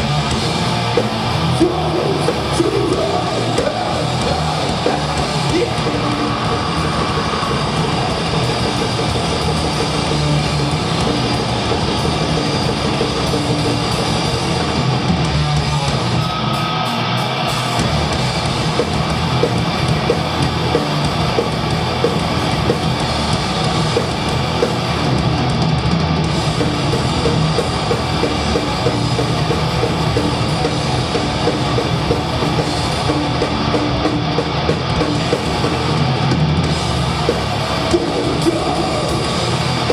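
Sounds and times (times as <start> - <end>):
death metal band playing: 0.0 - 39.9.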